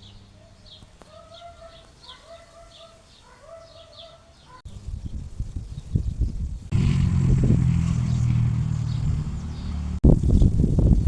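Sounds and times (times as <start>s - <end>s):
small birds chirping: 0.0s - 4.6s, 6.7s - 10.0s
loud low rumble: 6.7s - 10.0s.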